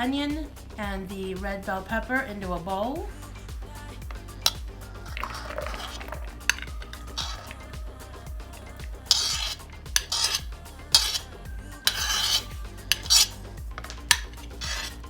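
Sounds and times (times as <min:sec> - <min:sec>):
vegetables scraped into bowl: 0:04.1 - 0:15.0
utensil clinking against dish: 0:04.5 - 0:07.6, 0:08.8 - 0:11.2, 0:11.9 - 0:14.9.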